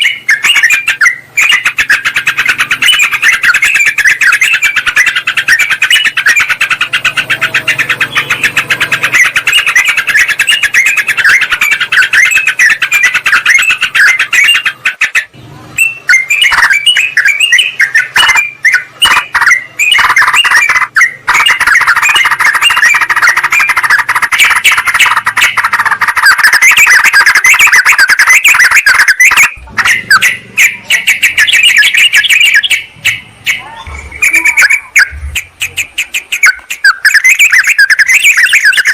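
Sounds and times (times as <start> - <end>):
bulbuls chattering: 0.0 - 38.9.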